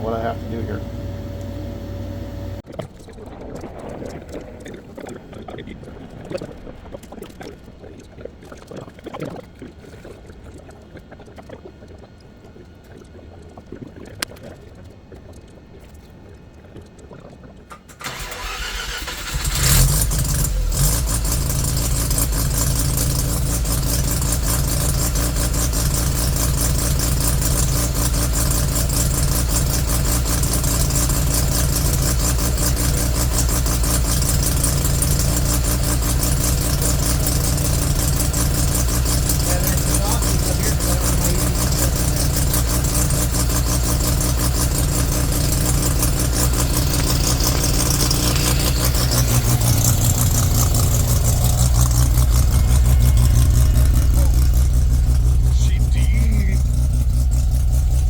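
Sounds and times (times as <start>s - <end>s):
engine starter cranking: 0.0s - 2.7s, 17.7s - 58.0s
rotary engine running: 0.0s - 8.1s, 18.0s - 58.0s.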